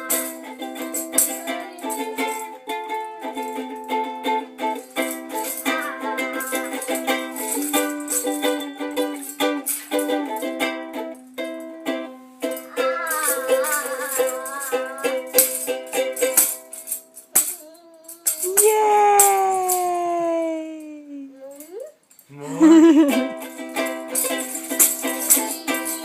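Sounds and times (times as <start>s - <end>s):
shaken rattle: 0.0s - 11.7s, 12.4s - 20.2s, 21.6s - 26.0s
plucked string instrument strummed: 0.0s - 16.7s
person singing long wavering notes: 5.4s - 7.9s, 12.6s - 15.8s, 22.3s - 23.3s.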